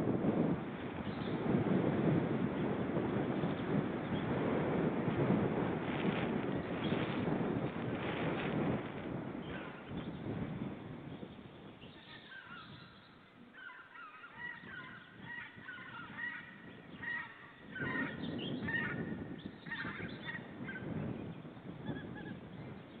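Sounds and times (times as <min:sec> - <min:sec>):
low wind rumble: 0:00.0 - 0:23.0
osprey calling: 0:11.8 - 0:20.9.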